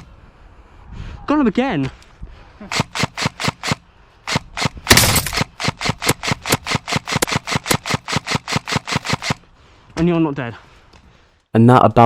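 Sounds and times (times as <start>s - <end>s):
airsoft gun shots: 2.7s - 9.4s.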